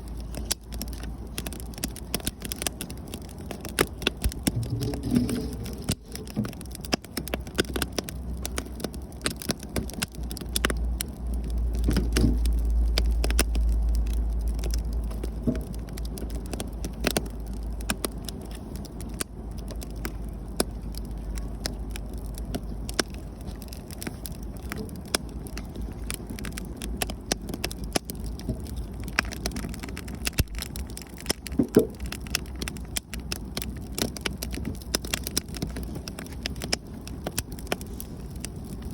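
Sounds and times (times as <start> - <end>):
low rumble: 0.0 - 9.1
campfire crackling and popping: 0.0 - 38.9.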